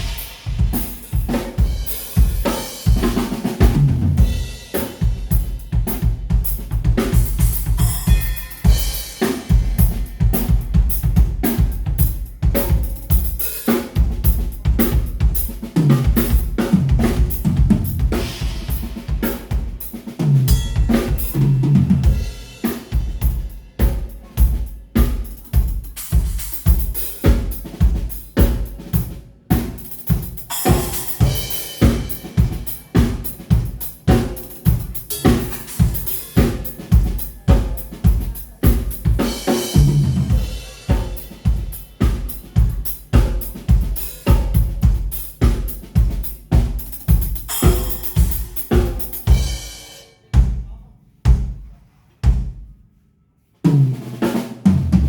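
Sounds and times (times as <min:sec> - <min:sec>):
drum kit groove: 0:00.0 - 0:52.8, 0:53.6 - 0:55.0
cymbal crashes: 0:07.2 - 0:10.6, 0:20.5 - 0:21.6, 0:34.2 - 0:37.3.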